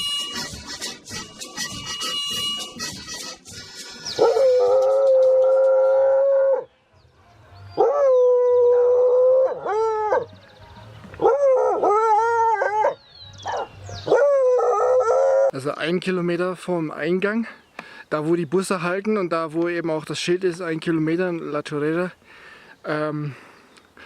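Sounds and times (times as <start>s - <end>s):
dog howling: 4.2s - 6.7s, 7.8s - 10.3s, 11.2s - 15.5s.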